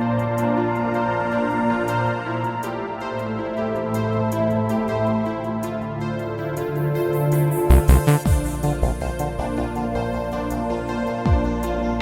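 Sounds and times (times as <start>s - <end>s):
electronic synthesizer music: 6.9s - 12.0s.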